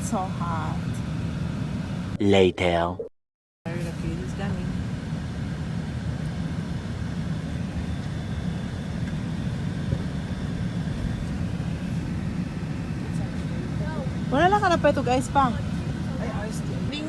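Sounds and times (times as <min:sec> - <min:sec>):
car rumble: 0:00.0 - 0:02.2, 0:03.7 - 0:17.0.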